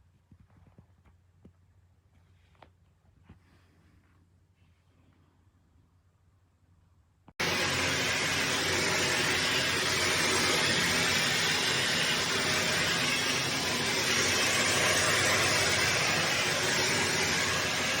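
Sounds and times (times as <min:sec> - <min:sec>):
vacuum cleaner running: 0:07.4 - 0:18.0.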